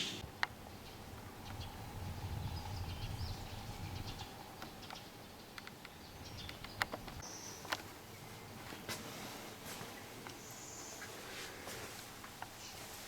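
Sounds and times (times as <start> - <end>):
high bird chirps: 0.0 - 0.2.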